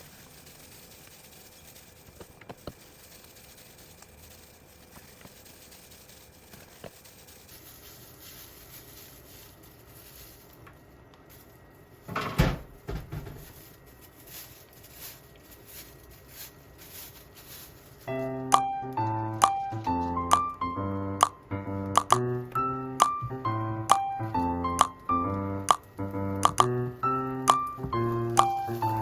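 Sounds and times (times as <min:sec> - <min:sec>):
kitchen clatter: 0:12.0 - 0:13.6.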